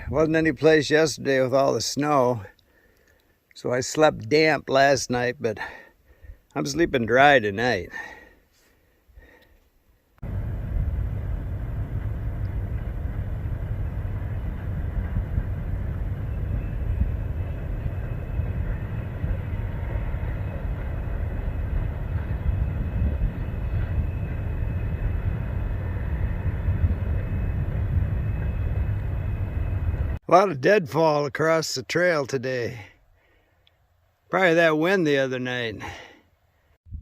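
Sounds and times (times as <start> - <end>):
wind buffeting microphone: 10.2 - 30.2.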